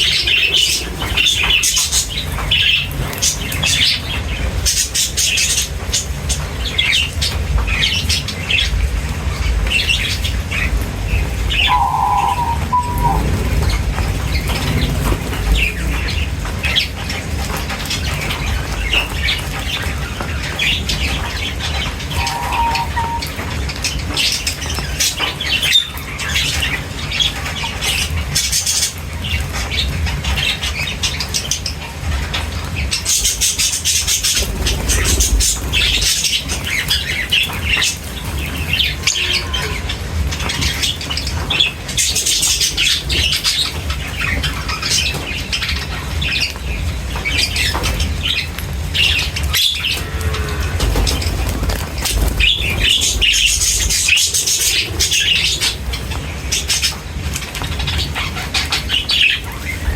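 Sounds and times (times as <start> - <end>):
wings fluttering: 0.0 - 31.5, 32.1 - 59.9
small birds chirping: 0.0 - 59.9
low rumble: 8.8 - 17.3.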